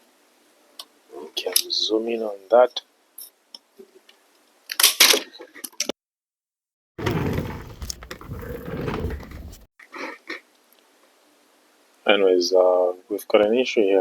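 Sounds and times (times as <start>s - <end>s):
rustling scraping rumble: 7.0s - 9.7s.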